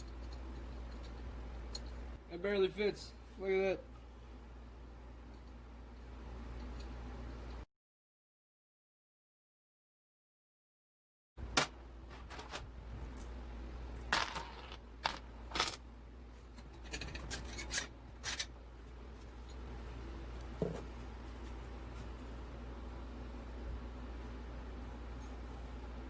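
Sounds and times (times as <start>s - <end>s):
steady low hum: 0.0s - 7.7s, 11.4s - 26.0s
metal parts clinking: 16.6s - 18.5s.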